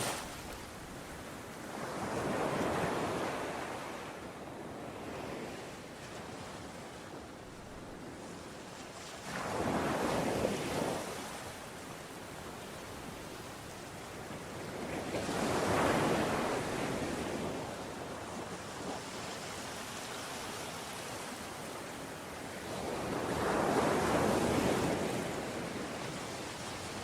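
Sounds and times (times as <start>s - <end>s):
ocean waves breaking: 0.0s - 1.2s.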